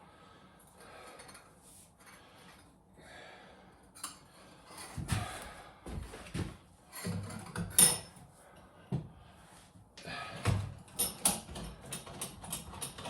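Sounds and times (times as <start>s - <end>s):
hard parts clunking and scraping: 4.8s - 8.2s.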